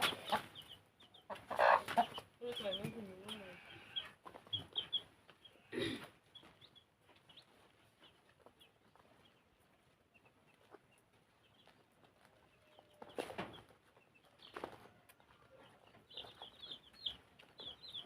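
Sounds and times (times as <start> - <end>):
chickens clucking: 0.0 - 18.0.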